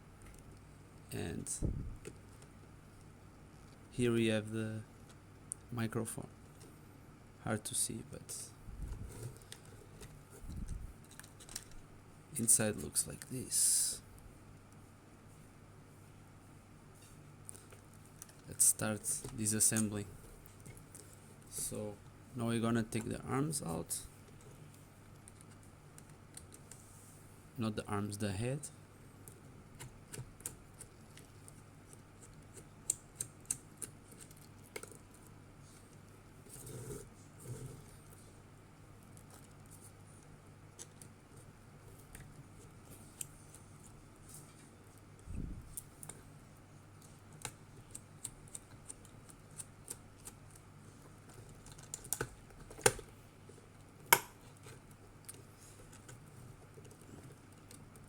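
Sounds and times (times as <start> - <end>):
small plastic parts clicking: 51.3 - 53.1.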